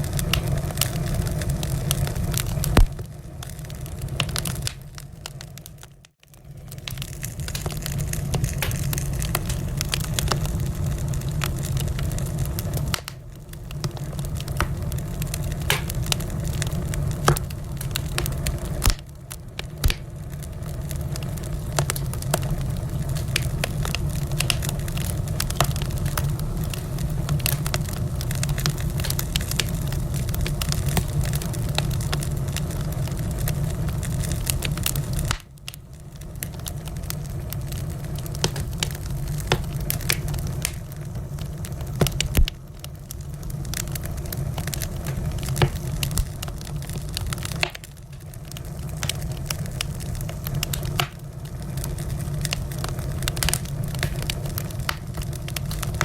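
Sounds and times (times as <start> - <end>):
wood fire crackling and popping: 0.0 - 56.0
steady low rumble: 6.4 - 56.0.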